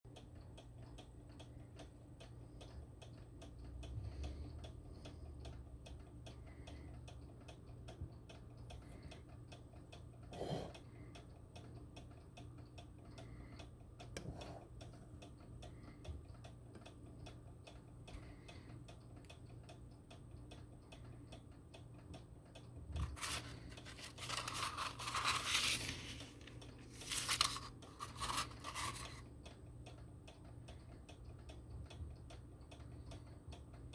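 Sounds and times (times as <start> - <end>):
rustling and crinkling: 23.0 - 29.2.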